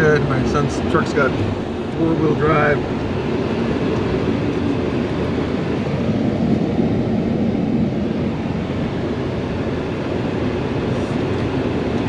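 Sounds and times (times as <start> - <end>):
truck engine rumble: 0.0 - 6.9.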